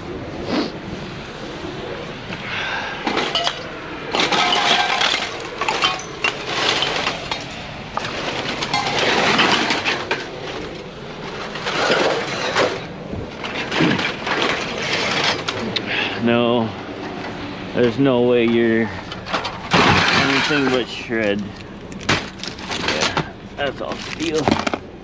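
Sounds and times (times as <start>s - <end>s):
scrap metal clanking: 3.0s - 15.8s, 18.5s - 24.8s.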